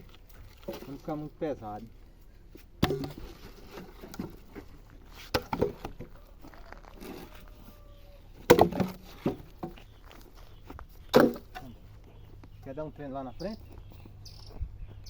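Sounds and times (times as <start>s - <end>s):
firewood logs knocking: 2.7s - 7.3s, 8.4s - 12.2s.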